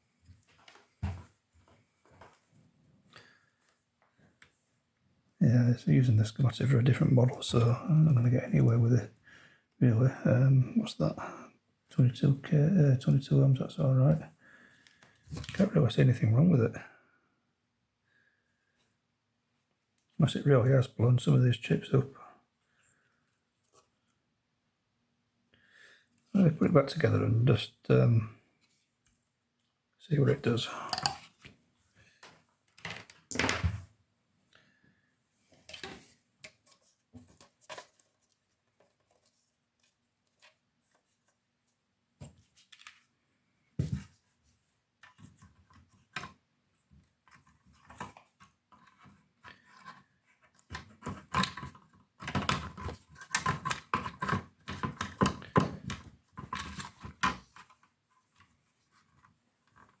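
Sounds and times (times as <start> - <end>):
plastic parts and tools clicking: 30.9 - 31.4, 50.6 - 57.9.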